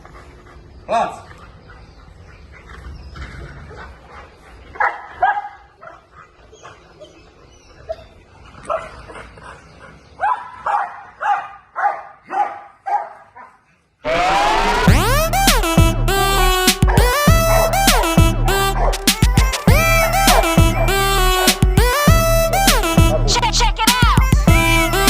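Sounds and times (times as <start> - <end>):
dog barking: 4.8 - 6.7, 7.9 - 9.0, 10.2 - 13.6, 16.8 - 19.0, 20.2 - 21.0.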